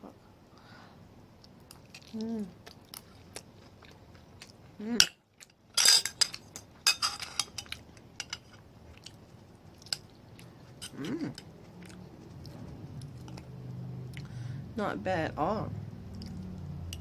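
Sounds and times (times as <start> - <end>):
person chewing food: 1.4 - 5.7, 7.4 - 14.4, 16.1 - 17.0.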